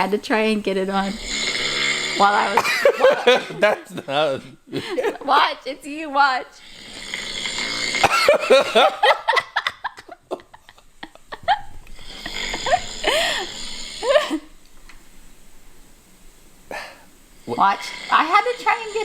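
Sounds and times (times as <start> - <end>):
man snoring through phone speaker: 1.0 - 3.6, 6.5 - 8.6, 12.0 - 14.2, 16.7 - 19.0
laughter: 2.6 - 5.5, 8.2 - 12.9.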